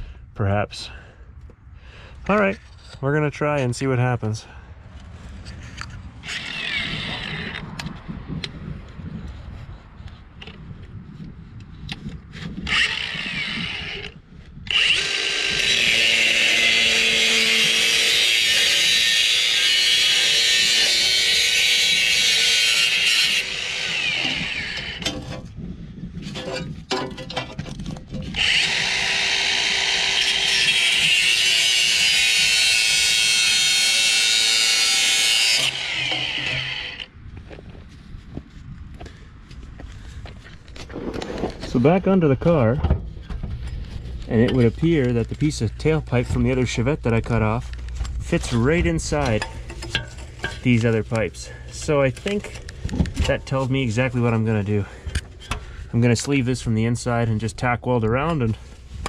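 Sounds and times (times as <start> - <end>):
power tool cutting metal pipe: 6.2 - 7.6, 12.7 - 25.4, 28.2 - 37.1.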